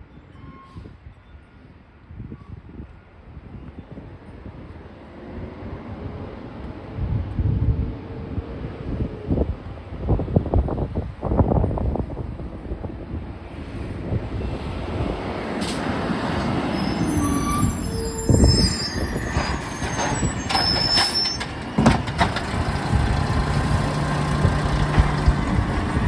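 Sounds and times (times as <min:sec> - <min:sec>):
garbage truck engine rumbling: 0:15.8 - 0:26.0
high squeals: 0:16.4 - 0:25.2.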